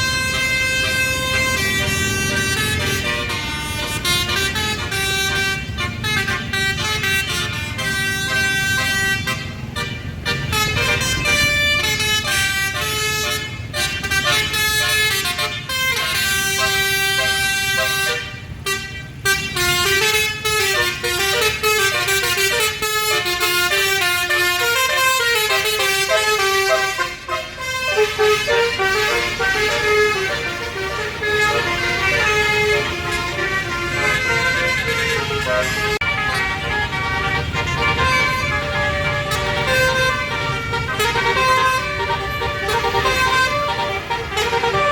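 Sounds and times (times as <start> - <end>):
bus engine running: 0.0 - 44.9
multi-tone bus horn melody: 0.0 - 44.9.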